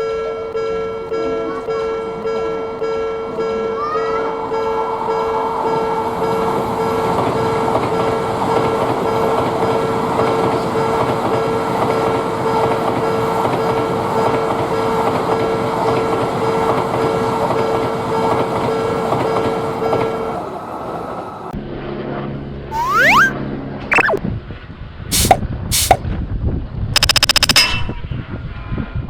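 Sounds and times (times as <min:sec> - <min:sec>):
train wheel and air rush: 0:25.1 - 0:26.0.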